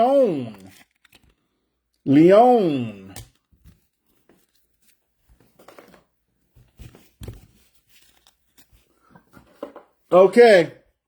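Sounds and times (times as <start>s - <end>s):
cards rustling: 0.0s - 1.9s, 3.0s - 9.8s.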